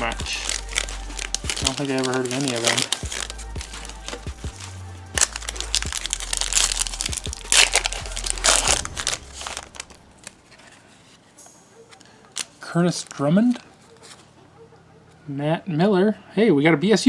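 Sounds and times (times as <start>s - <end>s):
foil wrapper crinkling and tearing: 0.0s - 10.7s.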